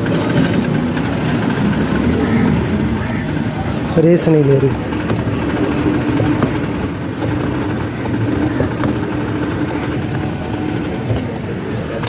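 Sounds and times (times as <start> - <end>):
car engine idling roughly: 0.0 - 12.0.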